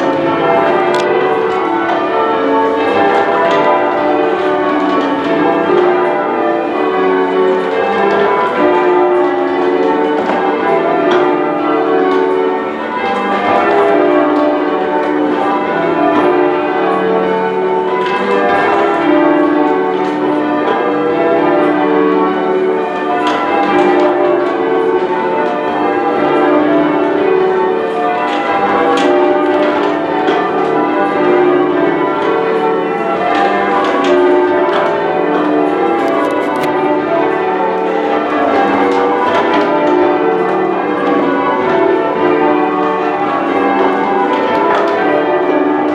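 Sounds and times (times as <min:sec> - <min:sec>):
church bells ringing: 0:00.0 - 0:45.9.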